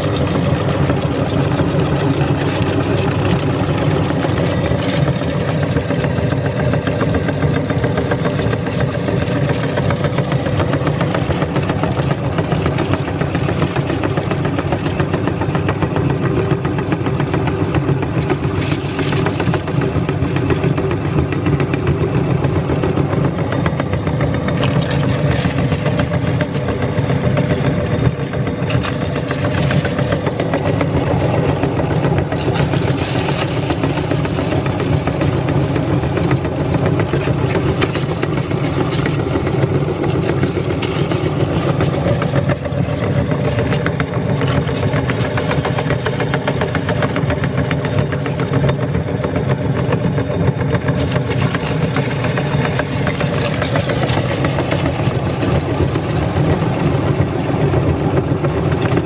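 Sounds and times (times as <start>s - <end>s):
meat grinder motor humming: 0.0s - 59.0s
corn chips crackling and crunching: 27.4s - 46.1s, 50.8s - 58.0s.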